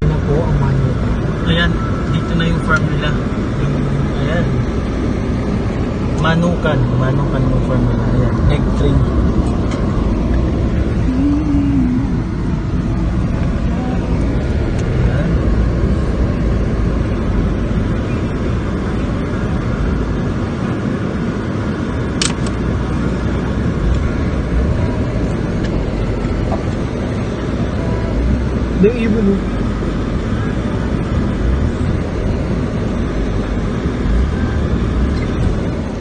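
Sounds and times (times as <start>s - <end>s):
car driving rumble: 0.0s - 36.0s
sharp click: 22.2s - 22.6s.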